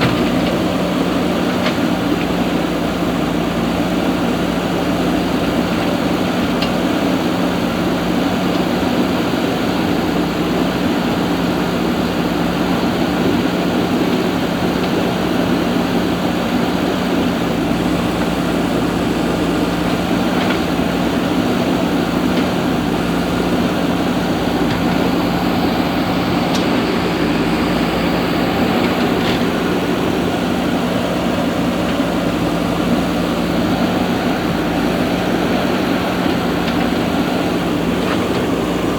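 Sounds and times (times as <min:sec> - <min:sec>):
machine humming: 0:17.1 - 0:38.9.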